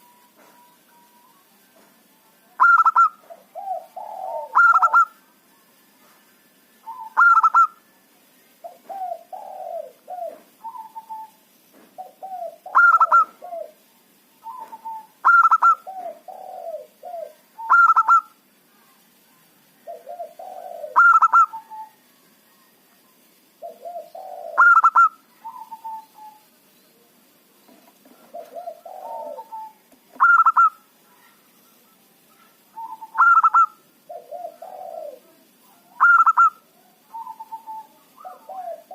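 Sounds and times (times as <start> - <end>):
dove cooing: 2.6 - 5.2, 6.8 - 7.8, 8.6 - 11.4, 12.0 - 18.4, 19.8 - 22.0, 23.6 - 26.5, 28.0 - 31.4, 32.3 - 38.9.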